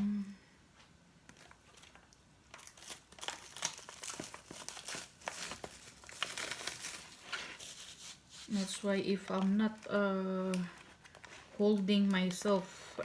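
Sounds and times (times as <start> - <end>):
food packaging crinkling: 1.3 - 13.0.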